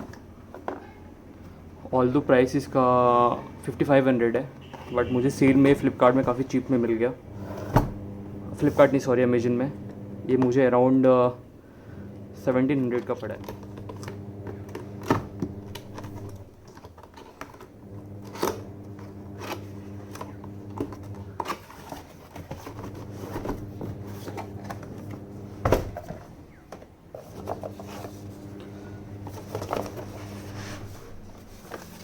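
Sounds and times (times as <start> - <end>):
packaging being handled: 12.8 - 32.0.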